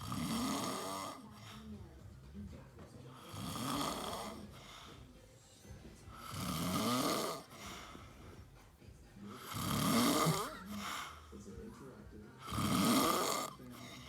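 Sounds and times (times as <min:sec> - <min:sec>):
loud snoring: 0:00.0 - 0:01.6, 0:03.2 - 0:04.6, 0:06.1 - 0:07.9, 0:09.2 - 0:11.0, 0:12.4 - 0:14.0
quiet breathing: 0:00.0 - 0:14.0.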